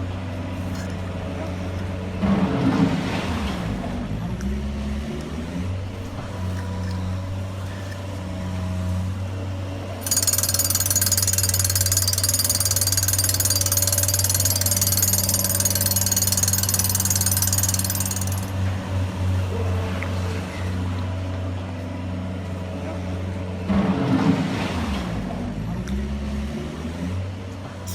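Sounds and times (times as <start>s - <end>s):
small electric motors humming: 4.2s - 9.2s, 10.0s - 18.5s
high-pitched mechanical rattle: 5.3s - 8.4s, 10.0s - 18.6s.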